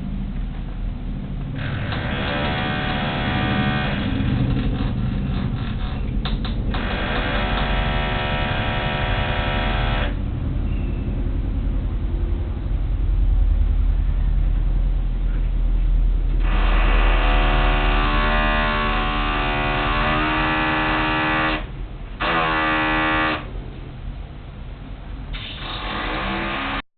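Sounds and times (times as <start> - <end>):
steady low construction rumble: 0.0 - 26.8
power tool whining: 1.6 - 10.2, 16.4 - 23.5, 25.4 - 26.8.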